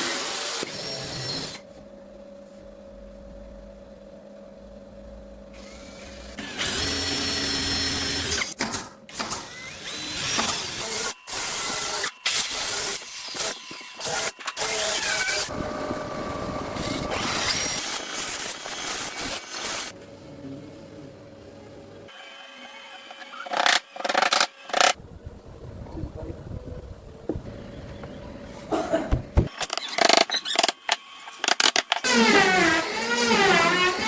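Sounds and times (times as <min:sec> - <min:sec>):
handheld power tool running: 0:05.6 - 0:19.9, 0:29.6 - 0:34.0.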